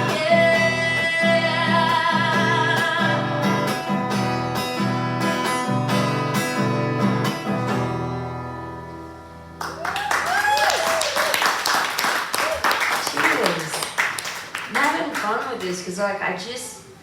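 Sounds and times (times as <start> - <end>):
guitar strumming: 0.0 - 9.8.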